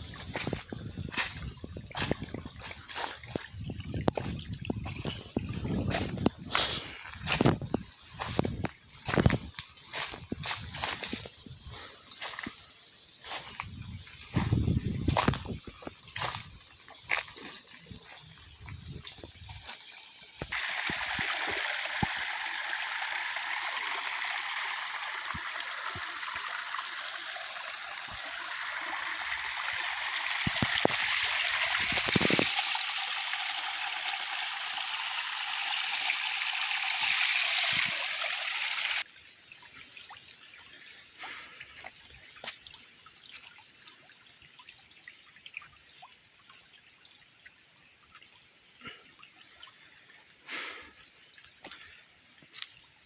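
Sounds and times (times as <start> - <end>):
creek water trickling: 0.0 - 53.0
faint drips: 29.2 - 53.0.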